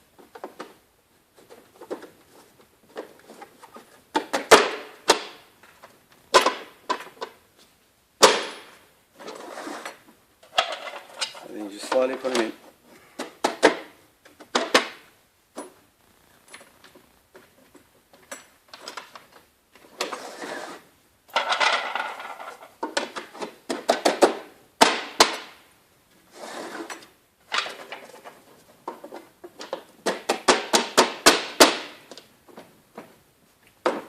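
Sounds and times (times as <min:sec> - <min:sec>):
plastic barrels knocking and clicking: 0:02.8 - 0:05.4, 0:21.3 - 0:25.6, 0:27.6 - 0:33.2
cable reel scraping and rattling: 0:09.2 - 0:12.4, 0:19.8 - 0:22.7, 0:26.2 - 0:28.4.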